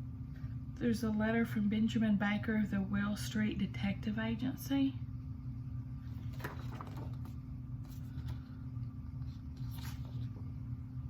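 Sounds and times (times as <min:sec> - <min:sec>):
steady low hum: 0:00.0 - 0:11.0
paper rustling: 0:06.1 - 0:08.5, 0:09.2 - 0:10.4.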